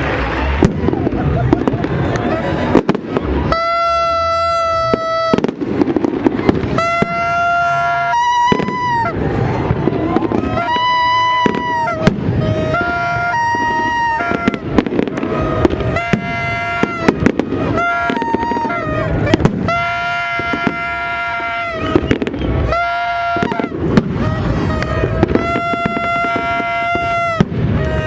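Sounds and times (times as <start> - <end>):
fireworks popping and crackling: 0.0 - 28.0
buzzy pitched tone: 6.4 - 28.0.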